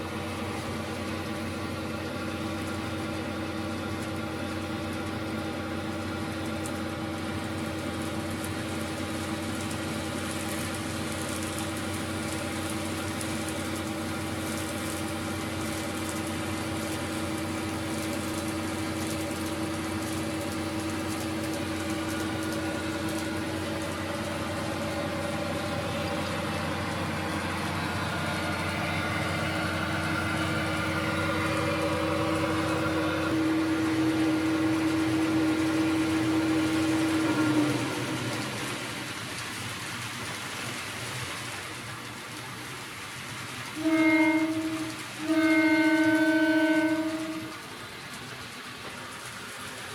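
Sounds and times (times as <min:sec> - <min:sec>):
diesel engine drone from speaker: 0:00.0 - 0:49.9.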